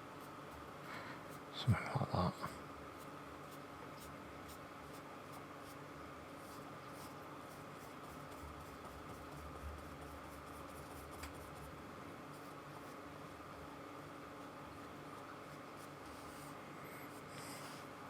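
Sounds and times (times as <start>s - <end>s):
paintbrush strokes: 6.4s - 11.6s, 15.4s - 17.9s.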